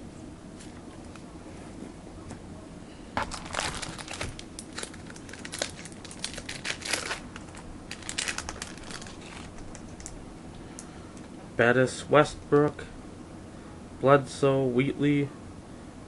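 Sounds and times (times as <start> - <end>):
wrapper tearing and crinkling: 3.2 - 10.1.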